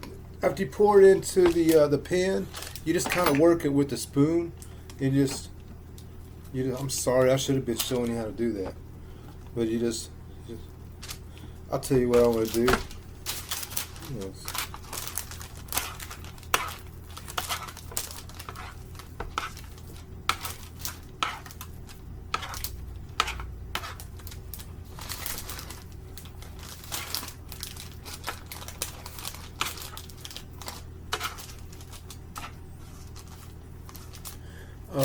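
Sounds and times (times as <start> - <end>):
steady low hum: 0.0 - 35.0
parchment paper crinkling: 1.2 - 3.4, 11.0 - 34.6.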